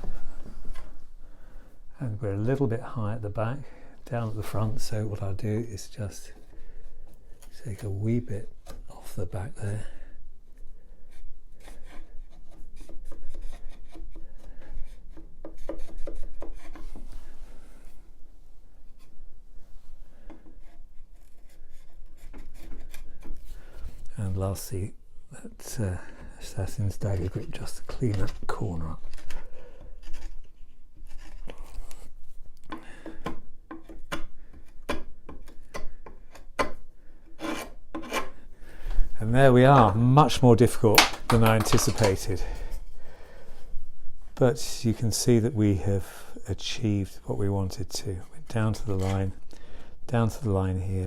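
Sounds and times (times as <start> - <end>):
chisel scraping wood: 10.9 - 17.9, 20.1 - 24.1, 27.1 - 42.8, 48.2 - 49.8.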